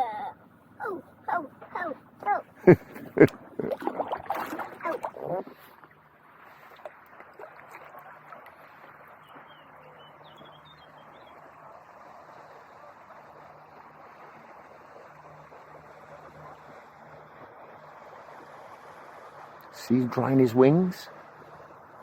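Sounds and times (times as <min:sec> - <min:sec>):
wind: 0:00.0 - 0:22.0.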